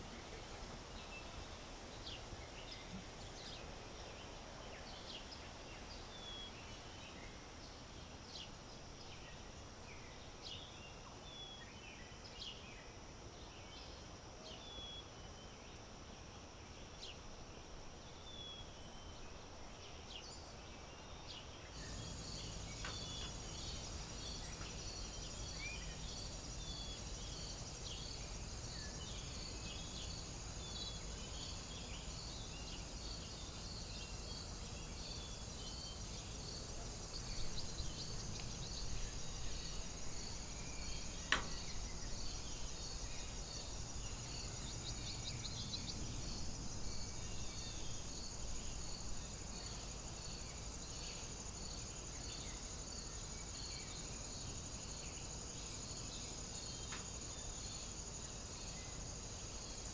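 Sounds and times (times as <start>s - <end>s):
insects chirping: 0.0s - 59.9s
bird chirps: 21.7s - 46.1s
sharp click: 41.3s - 41.7s.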